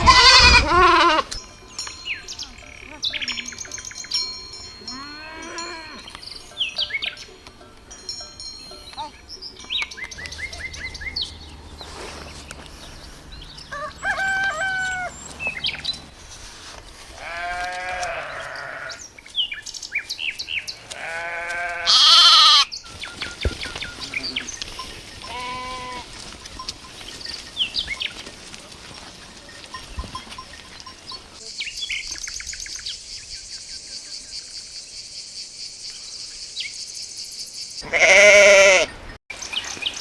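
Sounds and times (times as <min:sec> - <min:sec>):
sheep bleating: 0:00.0 - 0:01.4, 0:04.8 - 0:06.1, 0:17.2 - 0:19.0, 0:20.8 - 0:22.7, 0:25.2 - 0:26.1, 0:37.8 - 0:38.9
small birds chirping: 0:01.4 - 0:21.8, 0:22.7 - 0:28.5, 0:29.2 - 0:40.0.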